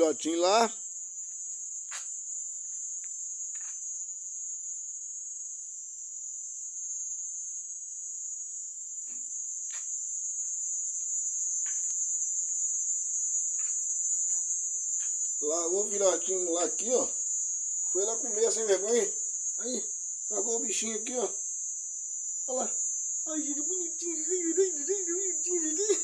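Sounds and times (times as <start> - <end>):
crickets chirring: 0.0 - 26.0.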